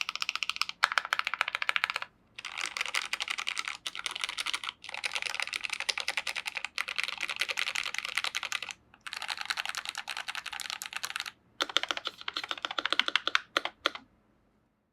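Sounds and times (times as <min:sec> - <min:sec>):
fast typing on mechanical keyboard: 0:00.0 - 0:14.0.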